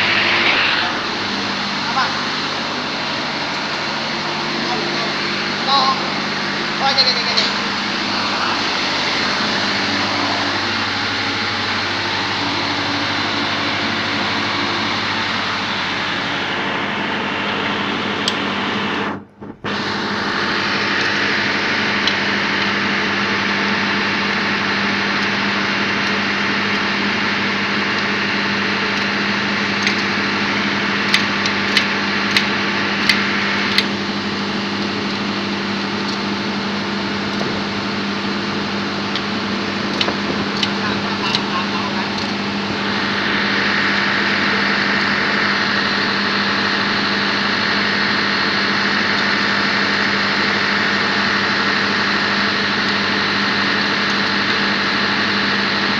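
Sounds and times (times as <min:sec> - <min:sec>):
engine-room machinery drone: 0:00.0 - 0:55.9
sharp clicks: 0:29.8 - 0:30.1, 0:31.0 - 0:33.9.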